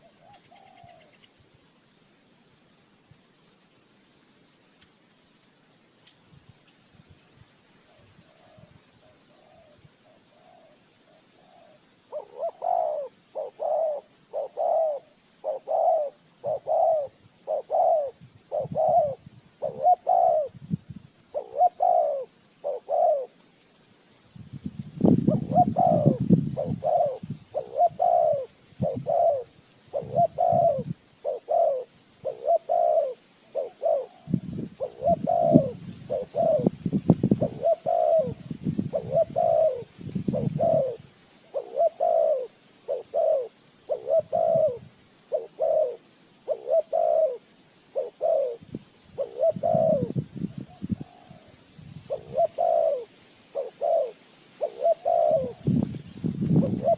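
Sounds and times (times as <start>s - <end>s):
dove cooing: 0.0s - 1.3s, 7.9s - 23.4s, 25.0s - 56.9s.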